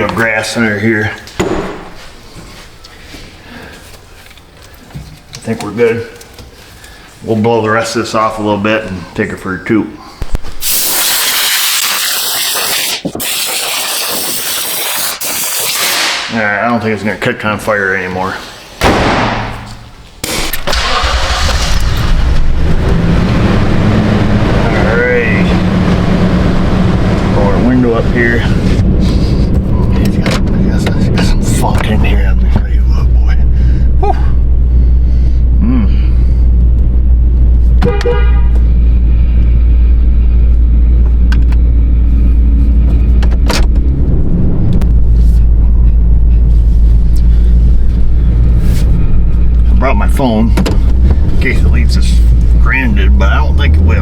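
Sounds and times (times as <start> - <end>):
sudden bang: 1.4 - 2.0, 18.8 - 23.1
engine running steadily: 20.5 - 54.0
short horn toot: 37.8 - 38.8.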